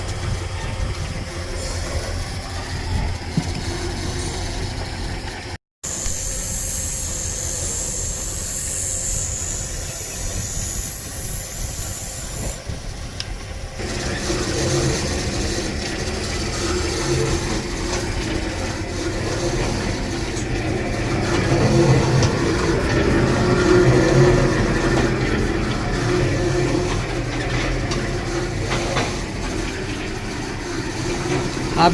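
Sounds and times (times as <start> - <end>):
machinery running: 0.0 - 31.9
steady hum: 0.0 - 31.9
high hiss: 5.9 - 13.2.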